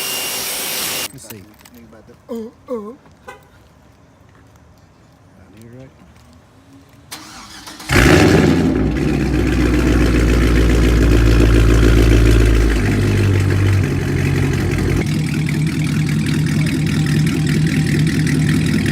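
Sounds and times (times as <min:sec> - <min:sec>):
car engine starting and idling: 0:07.1 - 0:18.9.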